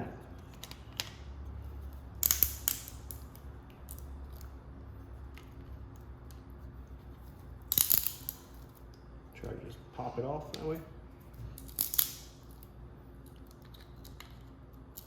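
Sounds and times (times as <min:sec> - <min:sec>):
pliers clicking and scraping: 0:02.2 - 0:04.5, 0:07.7 - 0:08.8.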